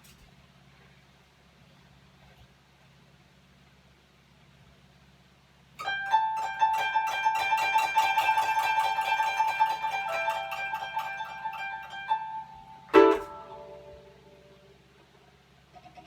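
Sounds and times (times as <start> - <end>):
koto plucking: 5.8 - 14.6.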